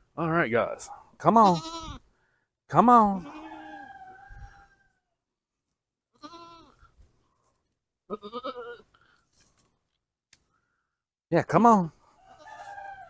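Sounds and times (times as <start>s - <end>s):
goats bleating: 1.4s - 2.0s, 3.1s - 3.9s, 6.2s - 6.8s, 8.1s - 8.9s.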